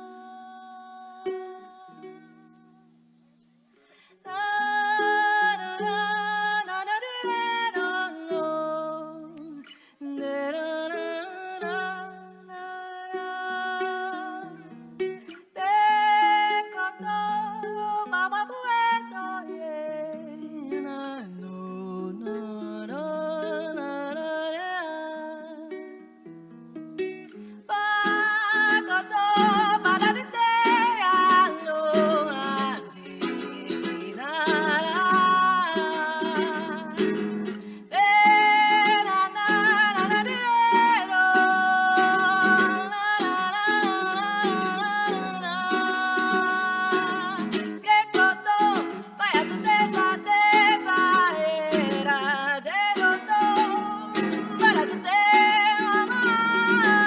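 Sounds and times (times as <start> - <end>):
person singing: 0.0 - 2.8, 4.2 - 26.0, 27.3 - 57.0
plucked acoustic strings: 25.7 - 57.0.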